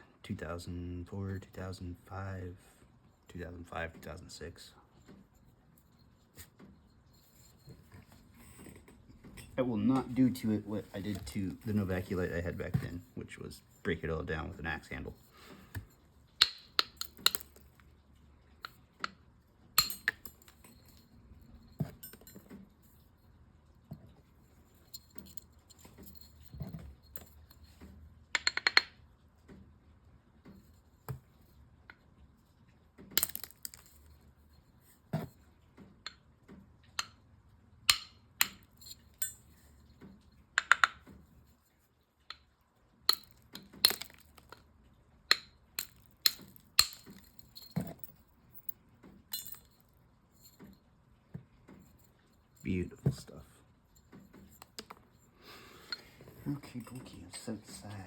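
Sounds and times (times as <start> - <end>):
rock slabs clinking together: 15.6 - 17.8, 33.2 - 34.0, 43.1 - 44.7, 45.3 - 48.1.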